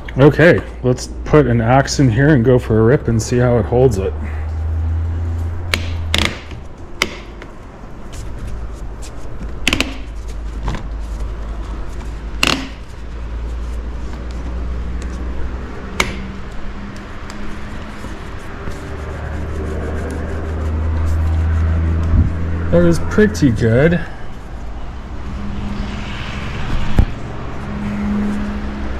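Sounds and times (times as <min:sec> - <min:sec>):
low rumble: 0:19.1 - 0:22.8.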